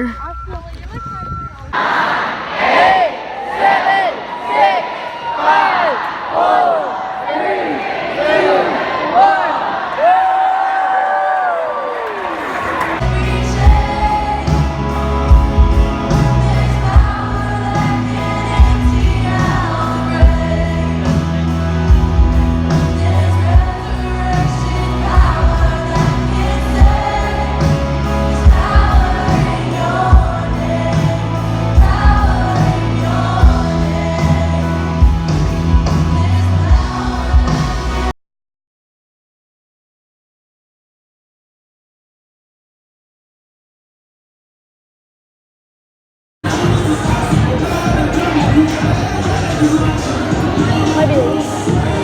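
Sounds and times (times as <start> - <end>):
pop song with sung vocal: 13.0 - 38.1, 46.5 - 52.0.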